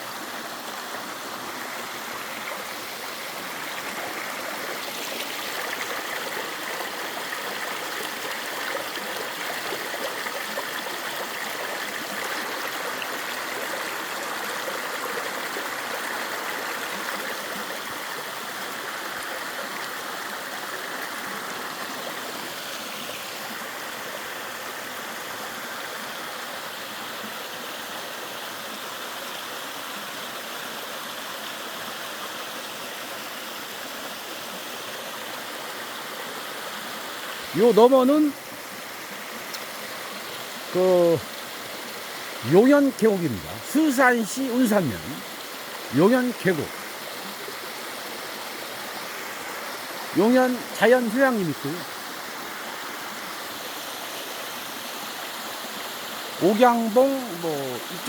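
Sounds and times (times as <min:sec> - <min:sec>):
stream flowing: 0:00.0 - 0:58.0.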